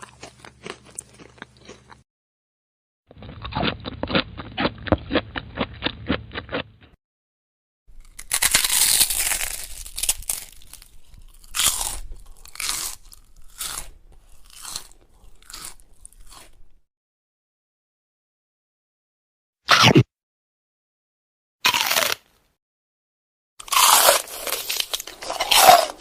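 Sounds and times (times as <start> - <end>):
chewing crunches: 0.0 - 2.0, 3.1 - 6.9, 8.0 - 16.7, 21.6 - 22.3, 23.6 - 26.0
crunchy bite: 0.0 - 2.0, 3.1 - 6.9, 7.9 - 16.7, 19.7 - 20.1, 21.6 - 22.4, 23.6 - 26.0.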